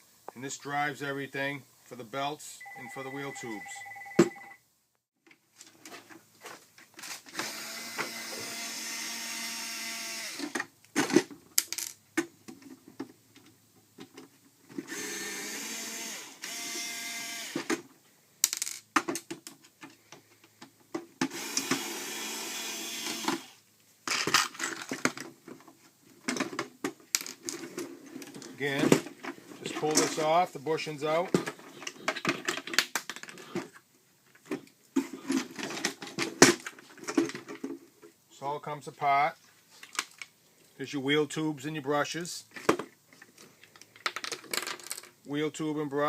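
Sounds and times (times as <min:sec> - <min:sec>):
cordless screwdriver whirring: 0:07.3 - 0:10.6, 0:14.9 - 0:17.7, 0:21.3 - 0:23.6
clicks and knocks of parts handled: 0:24.1 - 0:30.2, 0:31.2 - 0:38.2, 0:39.8 - 0:40.3, 0:42.5 - 0:45.2.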